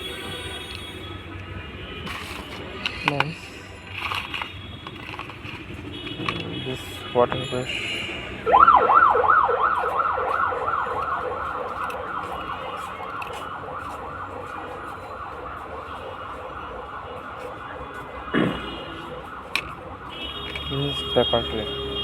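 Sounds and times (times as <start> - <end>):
siren yelping: 7.8 - 22.0.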